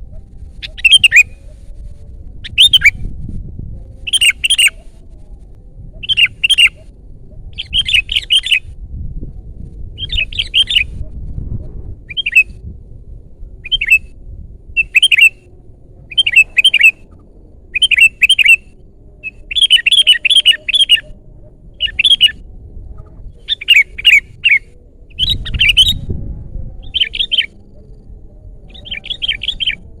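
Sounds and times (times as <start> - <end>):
low rumble: 0.0 - 19.5, 20.6 - 30.0
bird singing chirpy phrases: 0.6 - 1.3, 6.0 - 6.8, 7.6 - 8.6, 13.6 - 14.0, 14.8 - 15.4, 16.1 - 17.0, 17.7 - 21.1, 21.8 - 22.4, 23.4 - 26.0, 26.8 - 27.7, 28.7 - 29.9.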